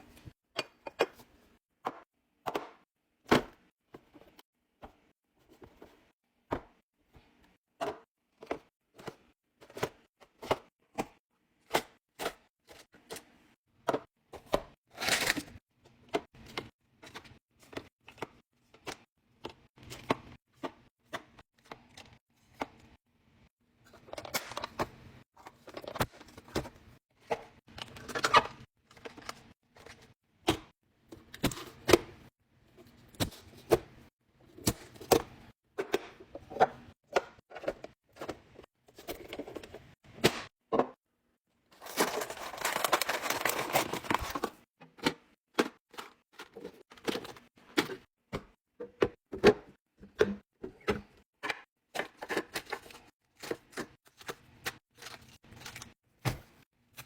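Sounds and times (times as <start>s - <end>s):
packaging rustling: 41.8s - 44.6s
containers clacking in a fridge: 41.8s - 56.4s.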